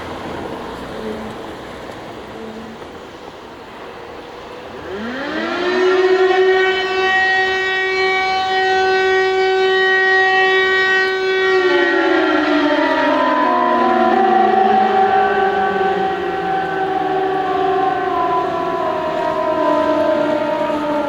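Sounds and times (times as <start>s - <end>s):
civil defence siren: 0.0s - 21.0s
low hum of traffic: 0.0s - 21.0s
second siren tone: 4.8s - 21.0s.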